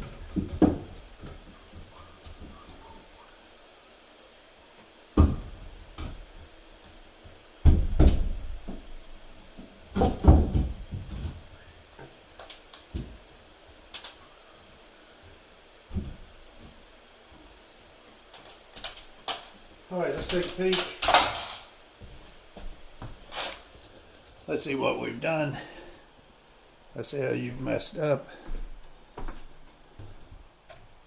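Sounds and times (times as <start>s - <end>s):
knocks and thumps on a wall: 0.0s - 2.8s, 5.2s - 8.9s, 9.6s - 12.1s, 15.9s - 16.8s.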